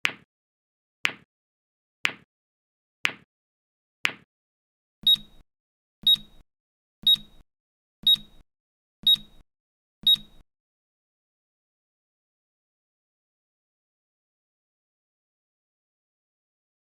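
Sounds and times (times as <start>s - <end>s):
timer alarm beeps: 5.0s - 5.4s, 6.0s - 6.4s, 7.0s - 7.4s, 8.0s - 8.4s, 9.0s - 9.4s, 10.0s - 10.4s.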